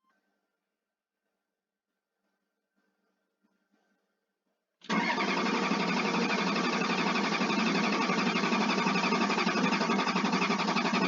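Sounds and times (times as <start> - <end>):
diesel engine starter cranking: 4.8 - 11.0.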